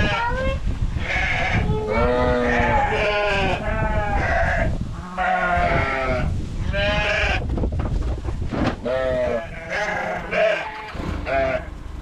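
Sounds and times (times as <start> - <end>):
sheep bleating: 1.0 - 7.4, 8.8 - 11.7.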